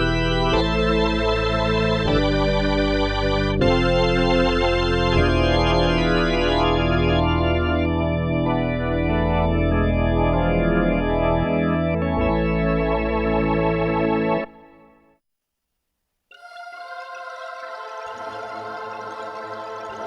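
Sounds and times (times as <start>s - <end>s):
synthesizer chords with deep bass: 0.0s - 14.5s.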